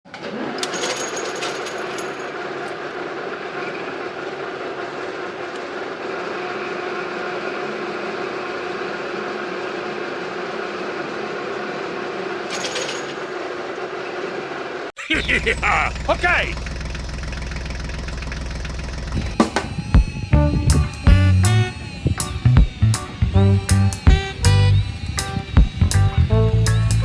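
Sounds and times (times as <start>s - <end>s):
metallic clatters: 0.1s - 2.8s, 12.5s - 13.4s
heavy machinery engine running: 15.2s - 27.0s.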